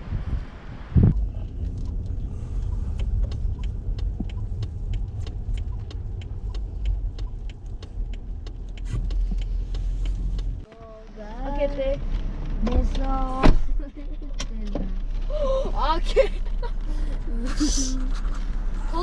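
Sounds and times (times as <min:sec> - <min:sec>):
car engine rumbling: 0:00.0 - 0:19.0
sharp ticks: 0:01.6 - 0:10.6.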